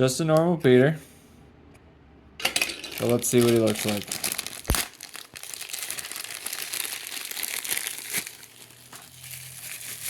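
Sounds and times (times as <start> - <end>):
plastic packaging crinkling: 2.5 - 10.0.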